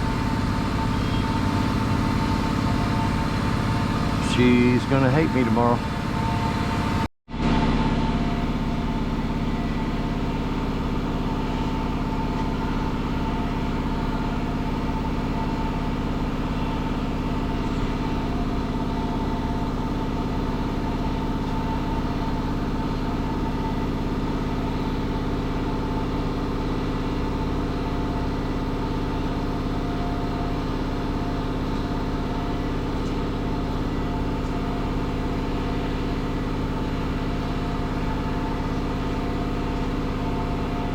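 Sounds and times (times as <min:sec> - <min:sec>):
drivetrain hum: 0:00.0 - 0:07.1
truck engine running: 0:00.0 - 0:40.9.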